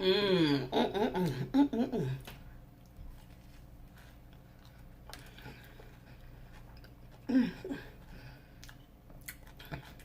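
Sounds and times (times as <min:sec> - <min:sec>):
person humming: 0:00.0 - 0:02.2
person chewing crunchy food: 0:02.2 - 0:07.3, 0:07.9 - 0:10.0.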